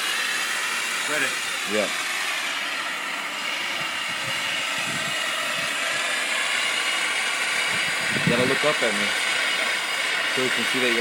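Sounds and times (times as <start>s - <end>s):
gas torch hissing: 0.0s - 11.0s.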